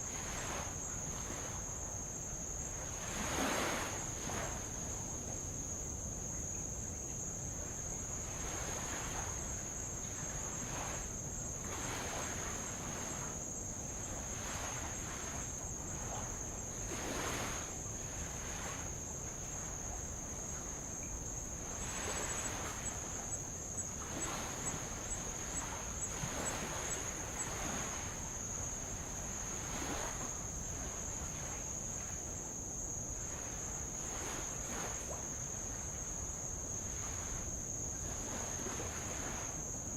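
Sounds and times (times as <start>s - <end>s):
insects trilling: 0.0s - 39.9s
waves lapping on rock: 10.2s - 19.0s, 20.8s - 31.9s.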